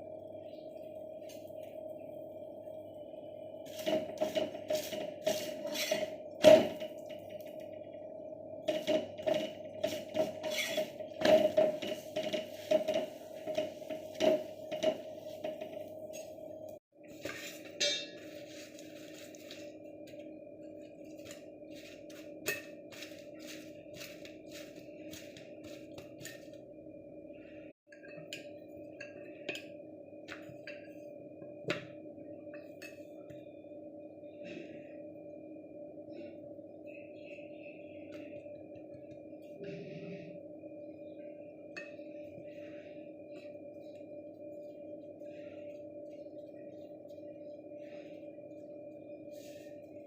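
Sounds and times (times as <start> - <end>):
steady hum: 0.0 - 50.0
kitchen utensils knocking and clinking: 17.6 - 18.3.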